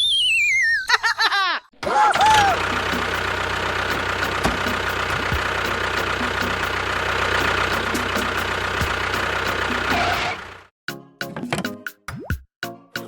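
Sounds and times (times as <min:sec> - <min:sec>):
motor humming: 0:01.9 - 0:10.7.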